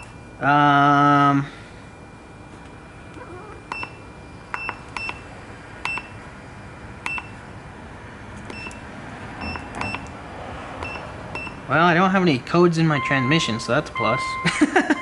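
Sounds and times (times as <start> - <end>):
short electronic key beeps: 3.7 - 5.2, 7.0 - 7.4, 8.5 - 8.8, 9.4 - 10.1.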